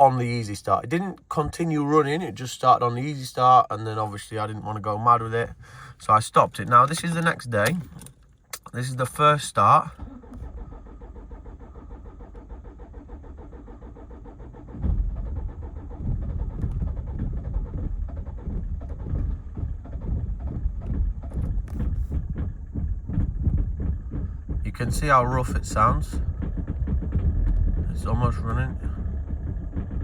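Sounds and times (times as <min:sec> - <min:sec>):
diesel engine cranking: 0:00.0 - 0:30.0
diesel engine running rough: 0:09.8 - 0:30.0.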